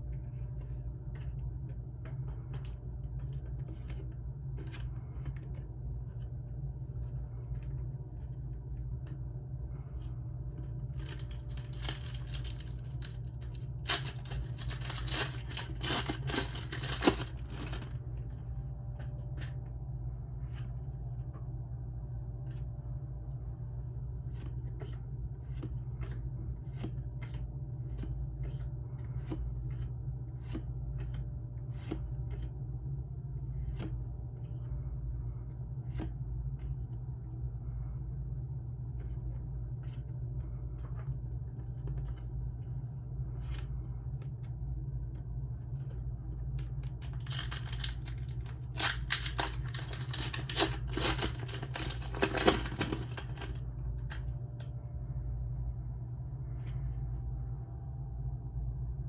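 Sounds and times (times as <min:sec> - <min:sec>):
low hum: 0:00.0 - 0:59.0
wrapper crinkling and tearing: 0:11.0 - 0:17.9, 0:46.8 - 0:53.6.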